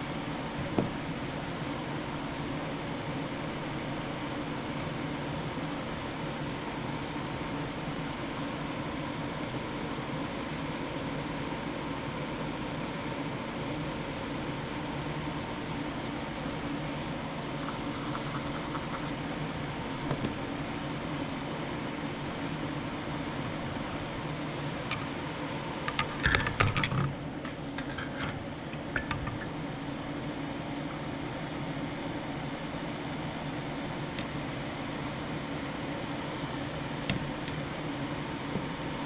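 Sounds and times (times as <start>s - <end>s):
low machine hum: 0.0s - 39.0s.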